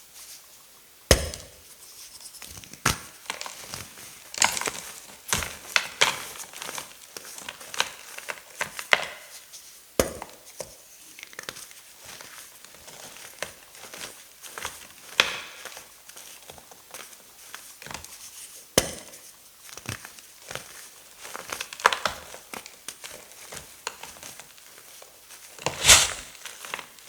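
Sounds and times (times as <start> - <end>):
chalk blocks cracking and crunching: 25.8 - 26.4.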